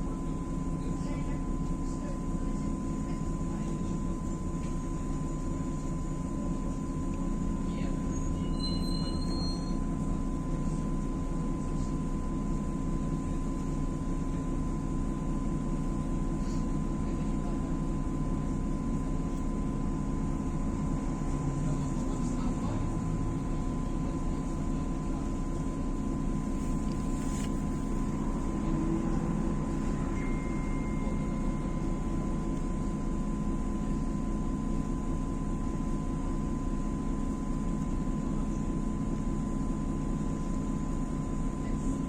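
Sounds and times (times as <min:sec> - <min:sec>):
short electronic beeps: 0:08.4 - 0:09.8
bus engine and road noise: 0:19.1 - 0:35.0
thin high whine: 0:26.6 - 0:33.8.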